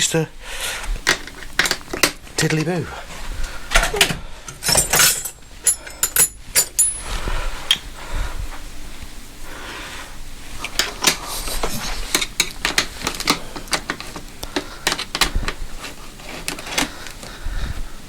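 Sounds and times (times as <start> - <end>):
hand tools clicking on metal: 4.5 - 7.0, 10.7 - 17.3.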